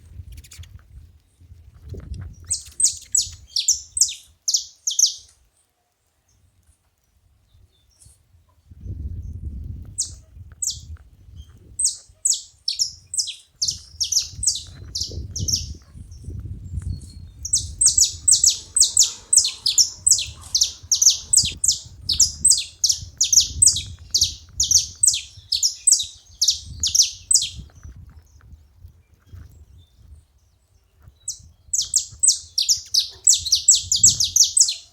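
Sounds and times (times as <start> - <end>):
finches chirping high chip notes: 2.5 - 5.3, 11.8 - 15.8, 16.9 - 27.6, 31.3 - 34.9.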